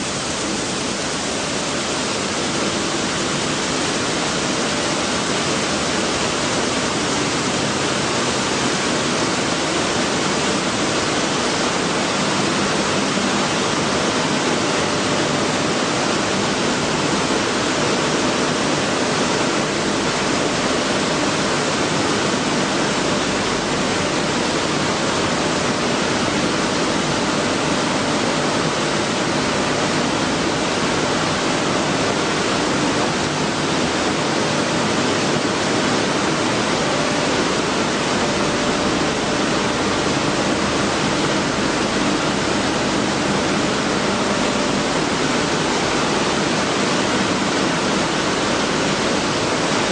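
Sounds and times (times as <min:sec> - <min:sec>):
milling machinery running: 0:00.0 - 0:49.9.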